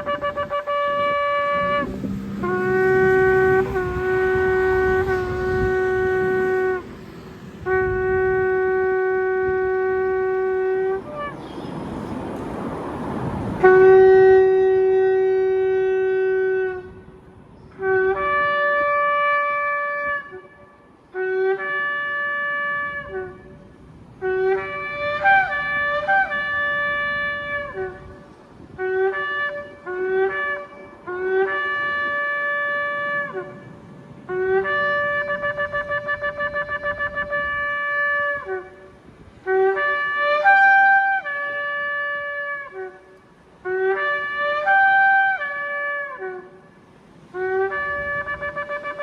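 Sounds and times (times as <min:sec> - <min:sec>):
shofar blasts: 0:00.0 - 0:11.8, 0:13.6 - 0:46.7, 0:47.3 - 0:49.0
rushing noise: 0:00.0 - 0:14.9.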